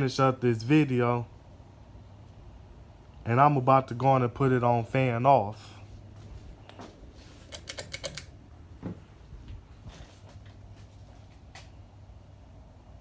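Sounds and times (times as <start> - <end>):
fan pull-chain switch clicking: 7.5 - 8.4.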